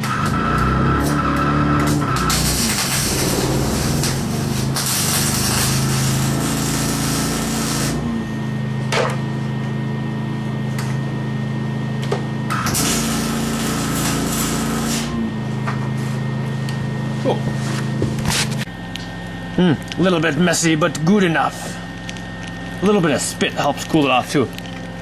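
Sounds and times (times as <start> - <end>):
welder arc crackling and buzzing: 2.2 - 5.8, 12.7 - 15.1
low hum: 2.4 - 6.5.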